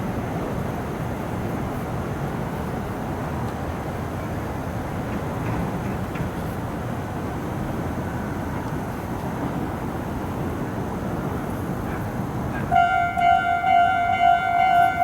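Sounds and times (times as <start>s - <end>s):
rumble of passing vehicles: 0.0s - 15.0s
level-crossing alarm ringing: 12.8s - 15.0s.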